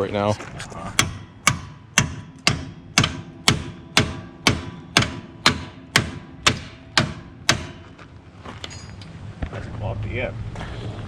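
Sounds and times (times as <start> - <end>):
hammer striking steel: 0.9 - 8.0.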